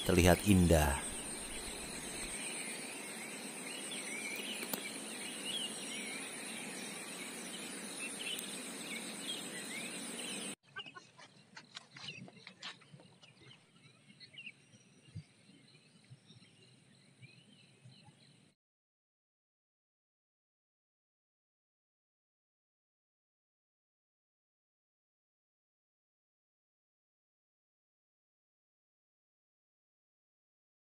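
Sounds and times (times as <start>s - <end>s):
birds chirping: 0.0s - 18.5s.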